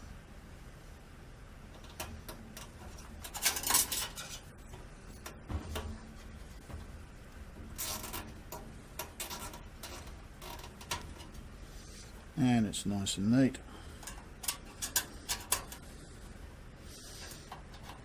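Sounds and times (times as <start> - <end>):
rattle against metal case: 1.7 - 11.4
cable ties clicking and rustling: 1.7 - 12.4, 13.8 - 16.0, 16.9 - 18.0.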